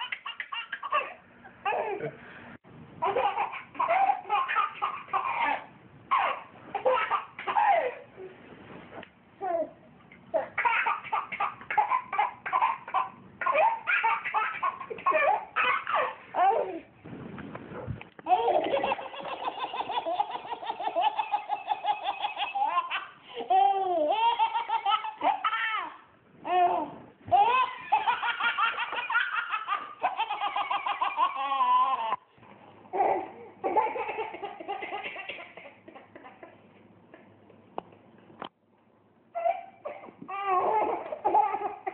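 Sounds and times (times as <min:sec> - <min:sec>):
baby laughing: 0:00.0 - 0:02.2, 0:03.0 - 0:08.1, 0:10.3 - 0:16.9, 0:18.2 - 0:32.3, 0:32.9 - 0:37.3, 0:39.4 - 0:41.9.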